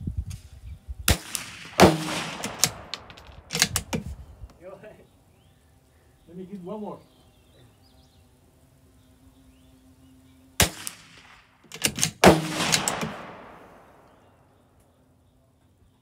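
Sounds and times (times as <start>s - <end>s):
gunshots with echo: 1.1s - 3.6s, 12.2s - 14.0s.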